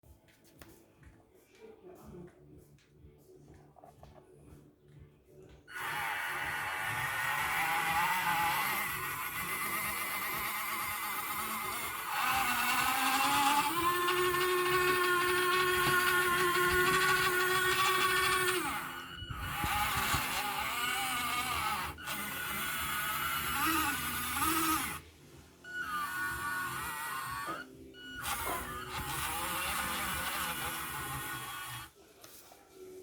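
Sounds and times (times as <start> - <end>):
electric motors and gearboxes whining: 5.7 - 31.9.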